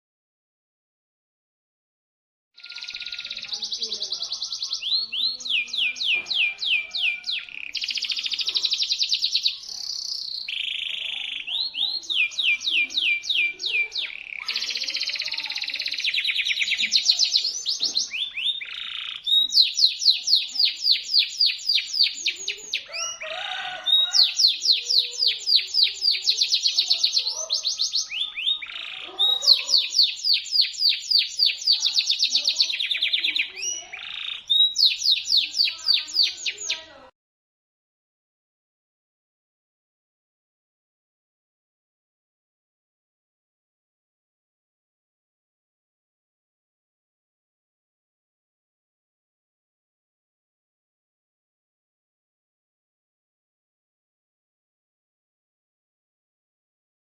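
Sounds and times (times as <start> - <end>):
canary singing trills: 2.6 - 37.1.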